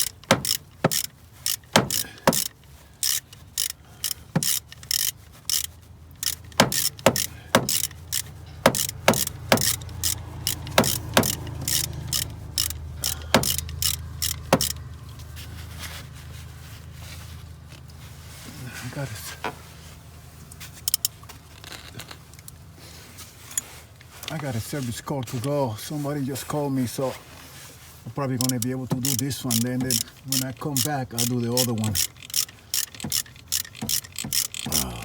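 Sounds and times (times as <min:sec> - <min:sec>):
ratchet wrench clicking: 0:00.0 - 0:14.8, 0:20.8 - 0:21.2, 0:28.4 - 0:35.0.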